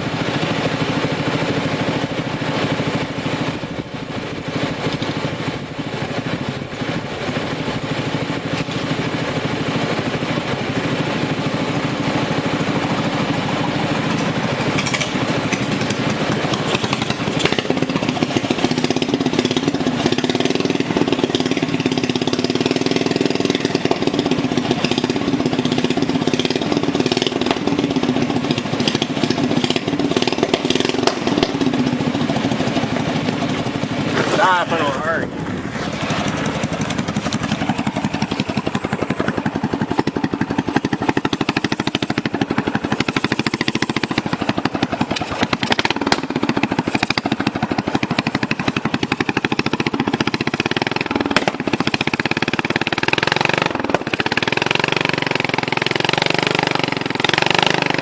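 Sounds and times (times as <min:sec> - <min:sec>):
lawn mower engine running: 0:00.0 - 0:58.0.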